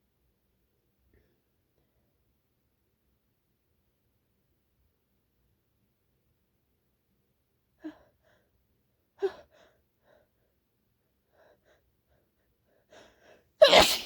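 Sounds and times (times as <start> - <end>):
woman breathing: 11.2 - 13.8
sneeze: 13.6 - 14.0.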